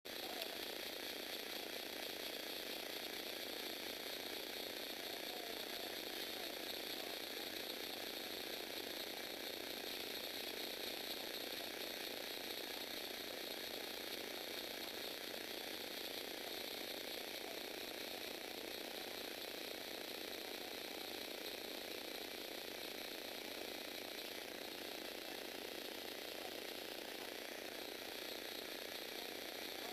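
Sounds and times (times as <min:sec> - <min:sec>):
motor-driven plastic gears whirring: 0:00.1 - 0:29.9.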